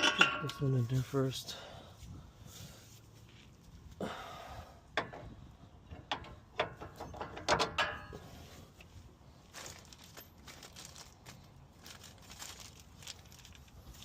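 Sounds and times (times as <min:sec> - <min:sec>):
metal clanks and knocks: 0:00.0 - 0:00.7, 0:05.0 - 0:08.3.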